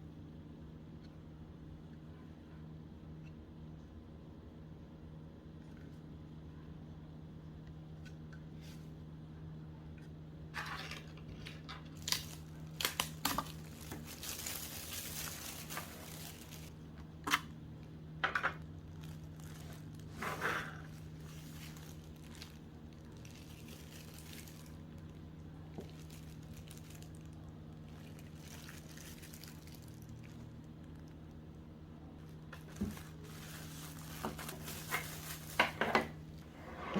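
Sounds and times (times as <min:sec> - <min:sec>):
low steady hum: 0:00.0 - 0:36.9
plastic and cardboard rustling: 0:10.6 - 0:16.8, 0:18.9 - 0:30.6, 0:32.3 - 0:36.6.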